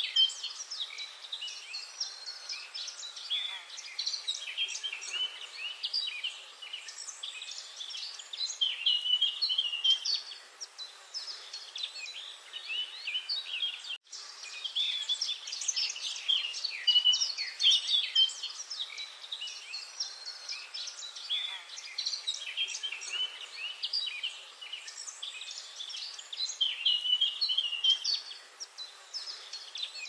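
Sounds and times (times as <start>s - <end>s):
small birds chirping: 0.0s - 30.0s.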